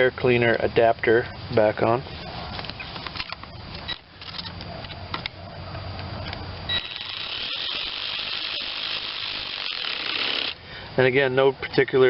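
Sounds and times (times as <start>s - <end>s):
socket wrench ratcheting: 6.7s - 10.6s.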